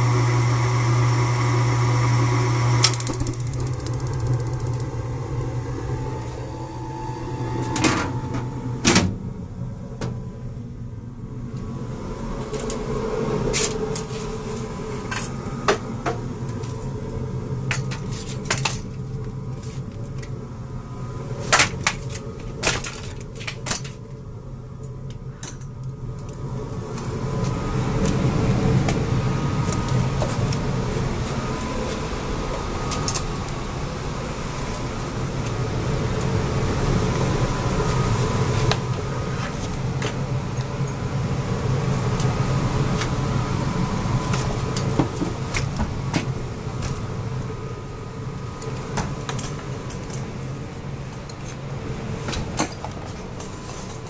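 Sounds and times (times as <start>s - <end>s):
machine humming: 0.0s - 17.7s, 26.4s - 48.6s.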